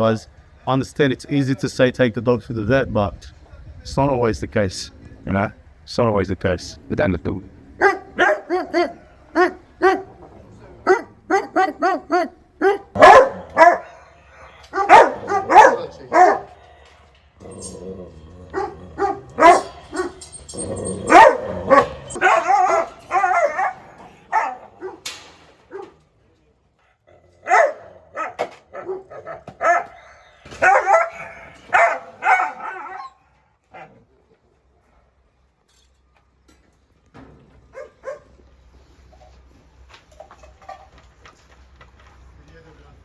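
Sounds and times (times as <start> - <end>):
dog barking: 7.8 - 16.6, 18.5 - 20.2, 21.0 - 25.1, 25.7 - 26.0, 27.4 - 33.1, 37.7 - 38.3
dog whining: 7.8 - 16.6, 17.4 - 25.0, 27.5 - 33.2.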